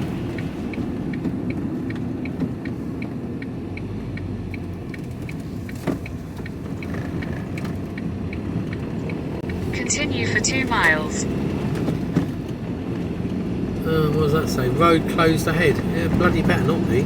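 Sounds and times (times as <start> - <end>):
turn signal ticking: 0.0 - 13.4
engine and road rumble: 0.0 - 17.0.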